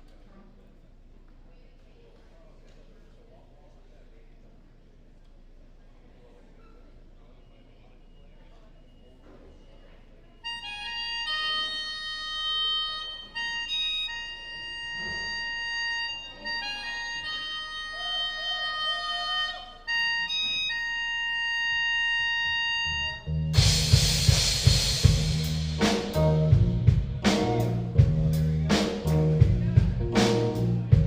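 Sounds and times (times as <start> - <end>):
organ sustained chords: 10.4 - 31.0
band with drums: 23.5 - 31.0.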